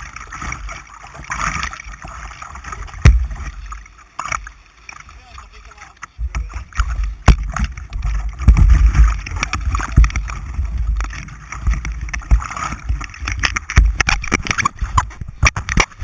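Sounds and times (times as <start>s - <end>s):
rushing gurgling whitewater: 0.0s - 16.0s
splashes and knocks against boat: 0.0s - 16.0s
wind buffeting microphone: 6.2s - 16.0s.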